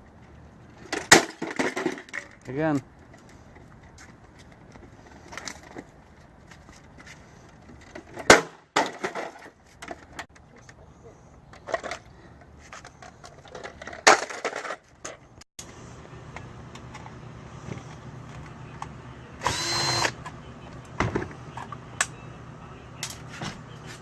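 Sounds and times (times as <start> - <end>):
power drill whirring: 19.4 - 20.2.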